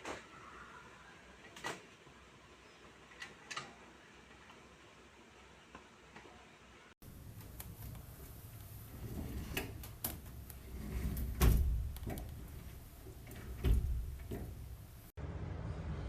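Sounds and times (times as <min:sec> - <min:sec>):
steady hiss: 0:06.6 - 0:15.2.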